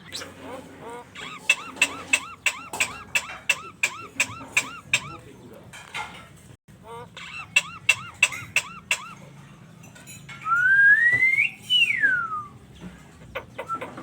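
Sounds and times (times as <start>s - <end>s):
starling calling: 0.0s - 5.4s, 6.9s - 9.3s.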